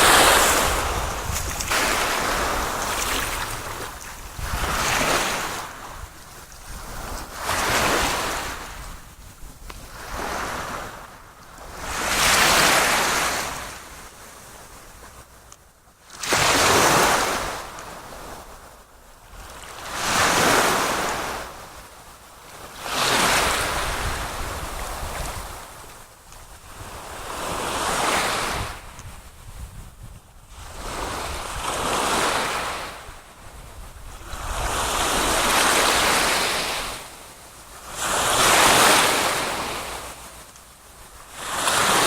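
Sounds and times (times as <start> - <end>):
sea waves washing in: 0.0 - 9.1, 9.9 - 15.0, 34.1 - 42.0.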